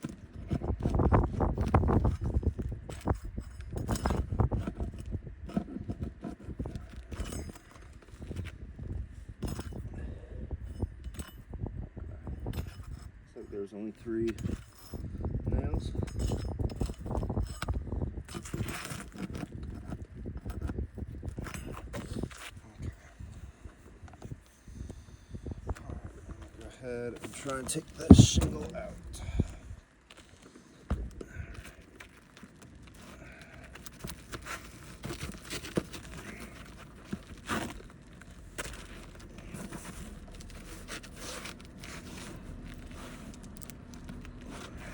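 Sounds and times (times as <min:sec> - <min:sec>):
knocking and scraping on roof shingles: 0:00.0 - 0:08.6, 0:30.2 - 0:43.2.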